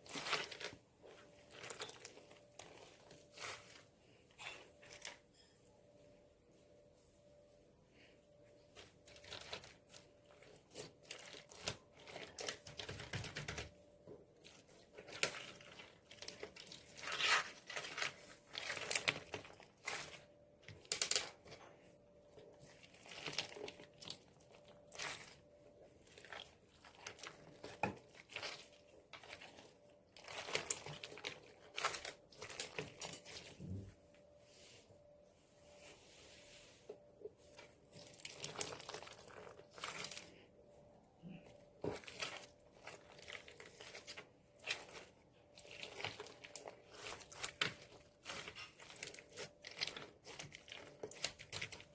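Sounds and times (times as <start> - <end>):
slime crackling and popping: 14.8 - 21.5, 41.8 - 51.9.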